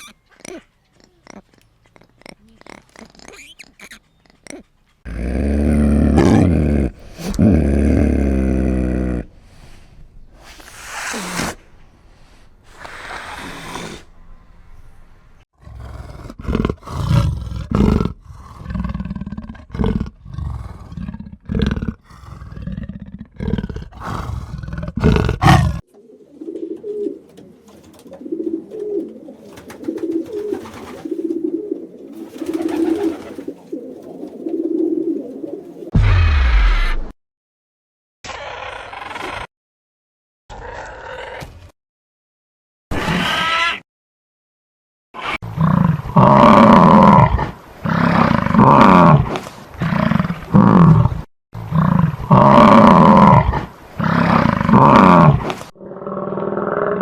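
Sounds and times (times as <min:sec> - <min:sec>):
animal deep roar: 0:05.1 - 0:09.4, 0:15.6 - 0:25.8, 0:38.3 - 0:39.5, 0:40.5 - 0:41.7, 0:45.5 - 0:57.0
rhythmic roaring grunts: 0:15.6 - 0:25.8.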